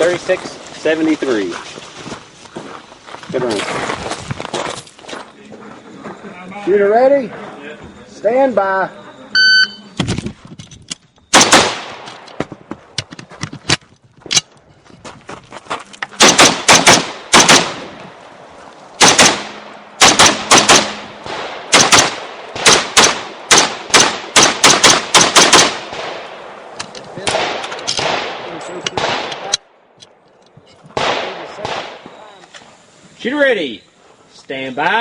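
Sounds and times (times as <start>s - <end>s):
rifle shots: 11.3s - 12.3s, 16.2s - 18.0s, 19.0s - 29.6s, 31.0s - 32.0s.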